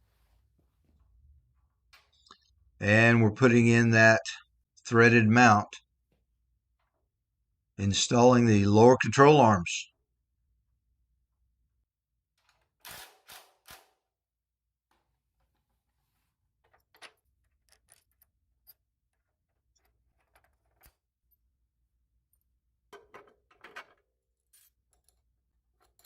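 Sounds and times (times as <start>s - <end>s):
tools clicking and knocking: 16.6s - 21.5s, 22.9s - 26.0s.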